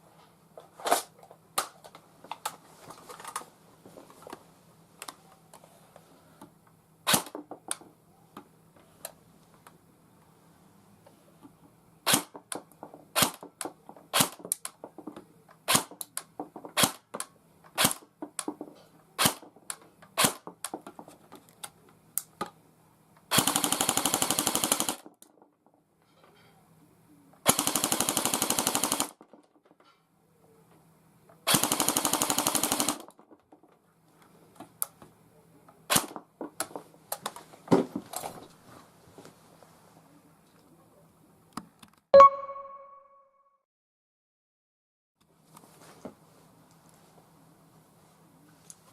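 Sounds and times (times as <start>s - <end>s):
airsoft gun full-auto bursts: 23.3s - 25.0s, 27.4s - 29.2s, 31.5s - 33.1s.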